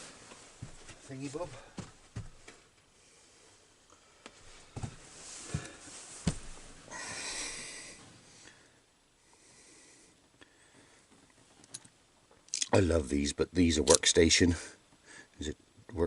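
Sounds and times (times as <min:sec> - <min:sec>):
breathy exhale: 0:06.9 - 0:11.1.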